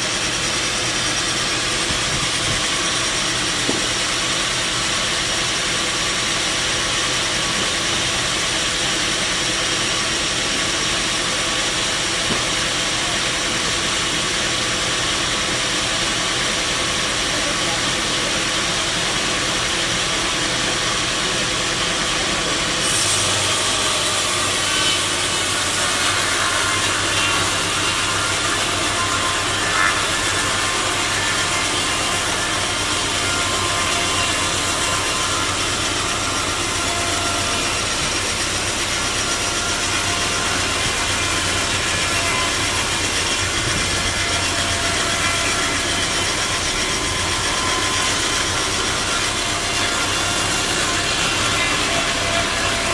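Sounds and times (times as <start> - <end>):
saw rasping through log: 0.0 - 52.9
machine hum: 32.0 - 52.9.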